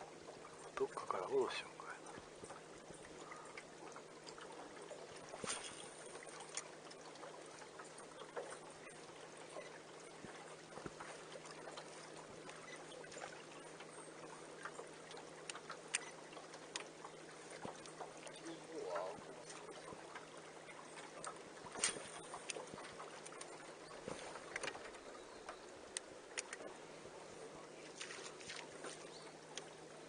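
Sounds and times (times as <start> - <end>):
water lapping against boat hull: 0.0 - 30.0
light ticks and knocks: 14.6 - 20.3, 21.0 - 26.7.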